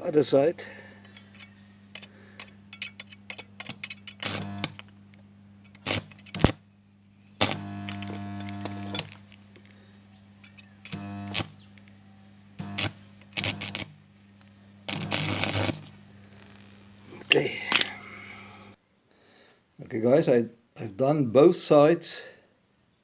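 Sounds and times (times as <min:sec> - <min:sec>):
electric welder humming: 0:00.0 - 0:18.8
welding arc crackling: 0:01.0 - 0:18.8.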